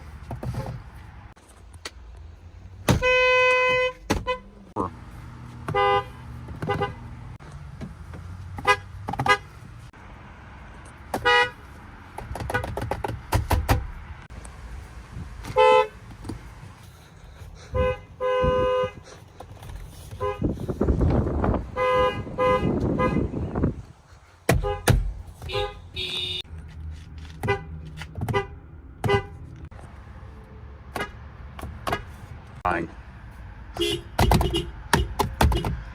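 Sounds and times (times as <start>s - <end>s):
car horns honking: 2.8s - 7.4s, 8.5s - 9.6s, 11.1s - 11.7s, 15.4s - 16.2s, 17.7s - 19.0s, 20.2s - 20.6s, 21.4s - 23.7s, 24.5s - 26.5s, 27.3s - 29.6s, 33.7s - 35.9s.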